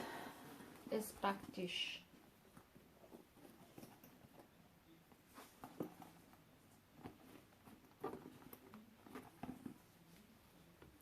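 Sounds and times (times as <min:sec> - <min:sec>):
faint backpack rustles and taps: 0:05.3 - 0:06.4.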